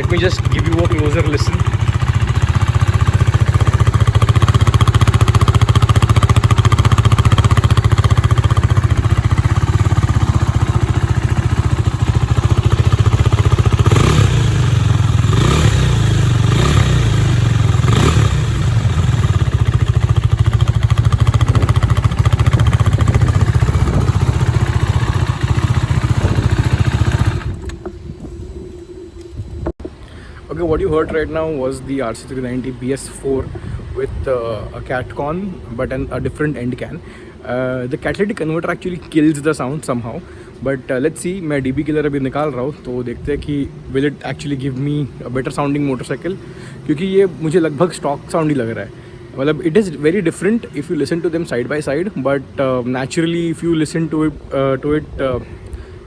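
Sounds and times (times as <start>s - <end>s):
motorcycle engine idling: 0.0s - 29.1s
engine throttle blips: 0.0s - 56.0s.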